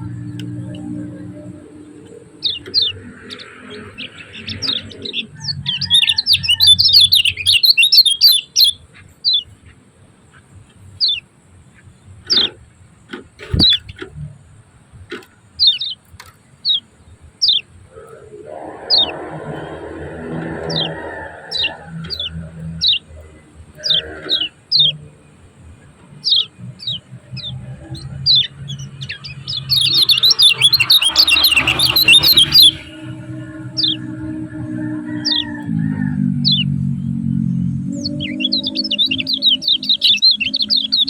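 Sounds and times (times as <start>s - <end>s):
low hum: 0.0s - 7.0s, 17.9s - 41.0s
bird chirping: 0.0s - 14.3s, 15.1s - 41.0s
bird fast chattering: 5.7s - 9.5s, 26.2s - 33.2s, 38.1s - 41.0s
rough noisy sound: 17.5s - 41.0s.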